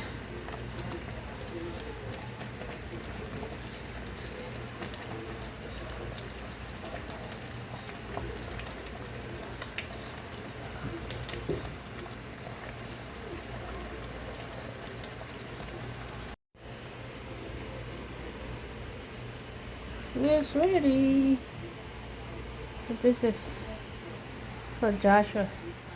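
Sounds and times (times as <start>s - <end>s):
sauce bubbling and popping: 0.0s - 16.4s.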